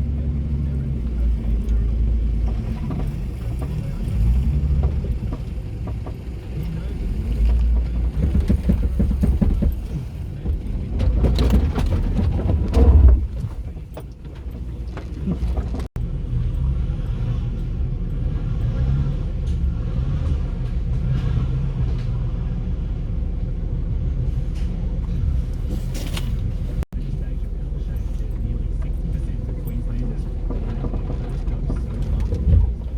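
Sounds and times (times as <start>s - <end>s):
vehicle engine rumble: 0.0s - 32.9s
knocks and rattles: 1.0s - 16.8s, 24.5s - 32.9s.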